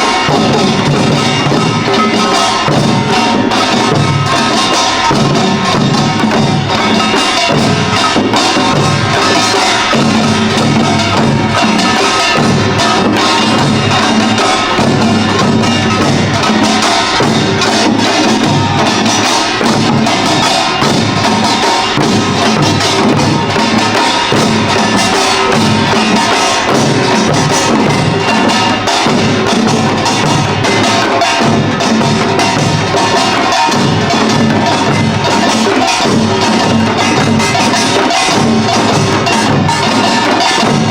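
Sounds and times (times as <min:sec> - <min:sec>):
drums beating: 0:00.0 - 0:40.9
small gongs clanging rapidly: 0:00.0 - 0:40.9.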